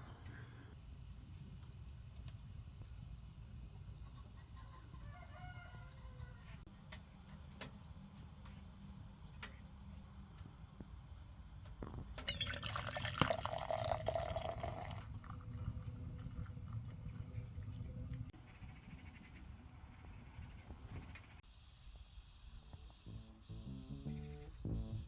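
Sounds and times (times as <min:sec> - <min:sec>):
faint drips: 0:11.6 - 0:18.3
liquid pouring: 0:12.2 - 0:18.3.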